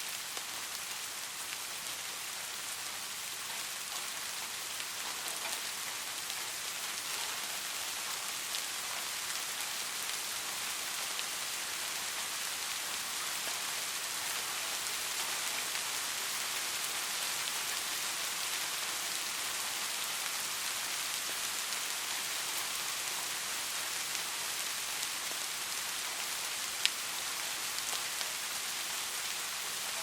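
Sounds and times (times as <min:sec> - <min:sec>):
gentle rain hissing: 0:00.0 - 0:30.0
raindrop ticks: 0:03.5 - 0:06.4.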